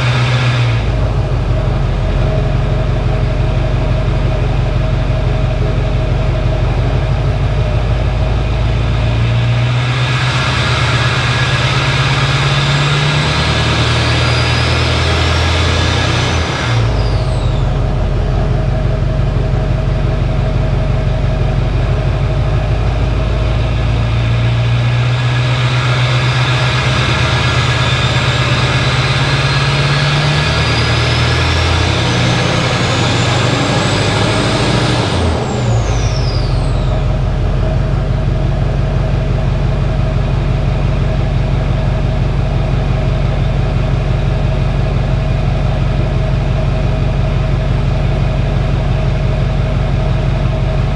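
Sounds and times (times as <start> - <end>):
diesel engine running: 0.0 - 50.9
turbo whistle: 9.9 - 18.7, 25.7 - 38.2.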